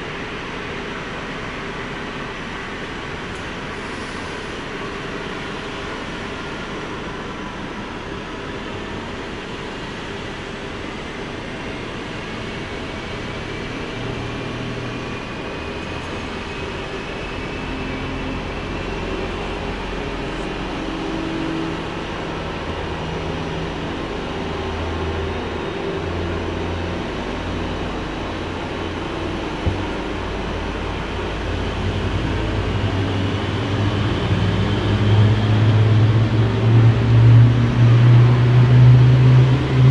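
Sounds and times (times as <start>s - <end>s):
distant jet rumble: 29.4s - 30.8s.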